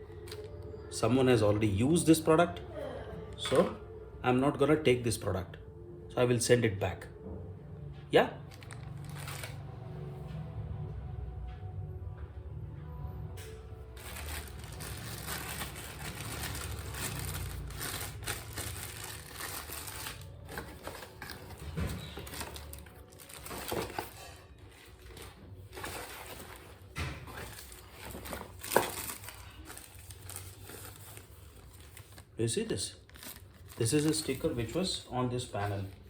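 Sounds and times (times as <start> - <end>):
packaging rustling and crinkling: 8.5 - 9.8, 14.0 - 36.0.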